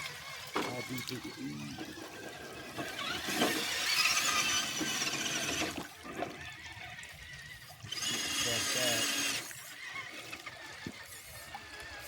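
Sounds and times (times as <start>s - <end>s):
high-pitched electric motor whine: 0.0s - 12.0s.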